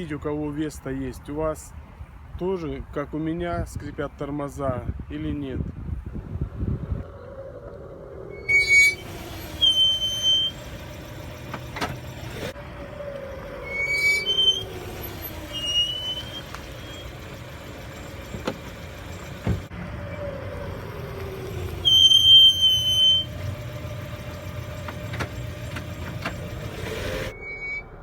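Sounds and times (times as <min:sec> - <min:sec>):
low rumble of moving car: 0:00.0 - 0:28.0
brakes squealing: 0:07.8 - 0:28.0.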